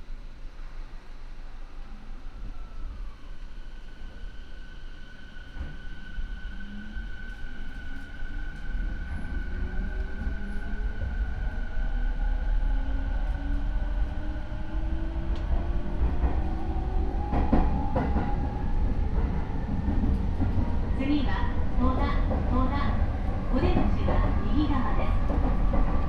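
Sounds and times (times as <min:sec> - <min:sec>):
train running rumble: 0:08.5 - 0:26.0.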